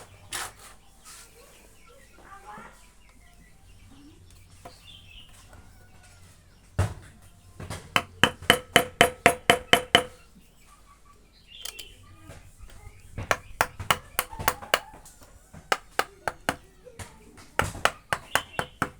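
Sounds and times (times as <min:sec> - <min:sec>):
knock: 0:07.6 - 0:10.1
ringing hammer strikes: 0:08.0 - 0:10.1.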